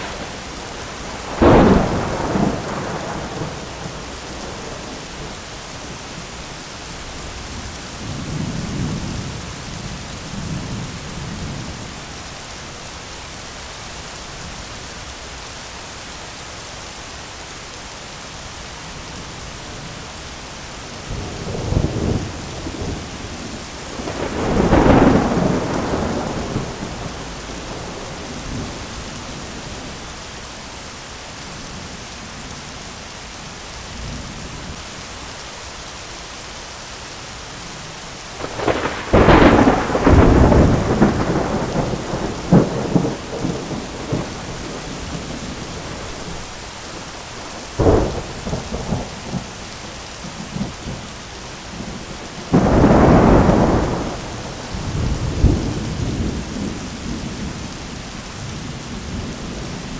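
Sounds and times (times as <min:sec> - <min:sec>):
sharp thunder cracks: 0:00.0 - 0:05.3, 0:23.9 - 0:28.9, 0:38.4 - 0:46.4, 0:51.8 - 0:57.6
rumbling thunder: 0:00.0 - 0:06.3, 0:07.5 - 0:11.9, 0:21.1 - 0:30.0, 0:38.4 - 0:51.1, 0:51.7 - 0:59.9
rain hiss: 0:00.0 - 0:59.9.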